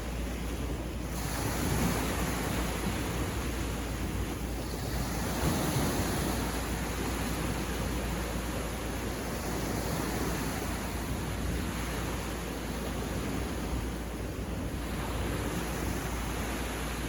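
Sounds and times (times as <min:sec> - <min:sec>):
ocean waves breaking: 0:00.0 - 0:17.0.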